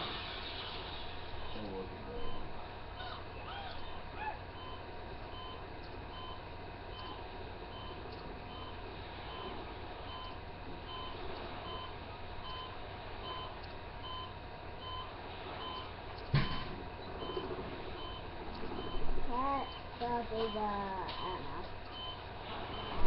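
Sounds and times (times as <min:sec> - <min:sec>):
low background hum: 0:00.0 - 0:23.0
two-tone electronic beeps: 0:02.1 - 0:02.5, 0:03.6 - 0:23.0
sharp thump: 0:16.3 - 0:16.7.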